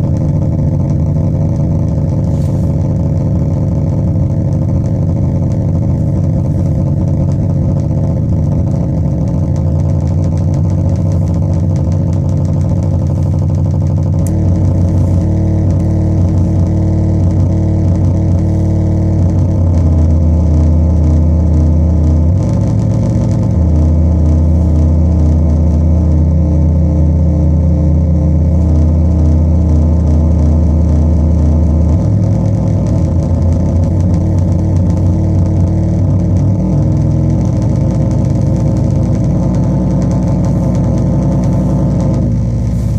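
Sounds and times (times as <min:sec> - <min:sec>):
synth drone buzzing: 0:10.4 - 0:42.9.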